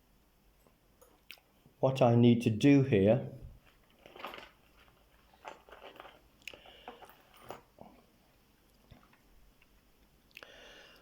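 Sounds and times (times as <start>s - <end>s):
soft rustling and scraping: 3.5s - 8.2s.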